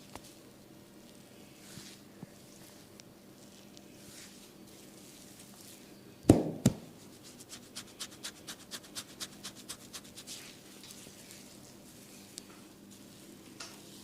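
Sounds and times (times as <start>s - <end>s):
loud slaps on the body: 6.3s - 6.9s.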